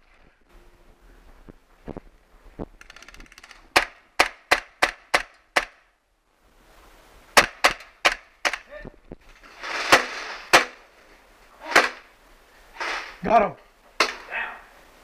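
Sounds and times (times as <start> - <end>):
airsoft gun shots: 7.4 - 8.6.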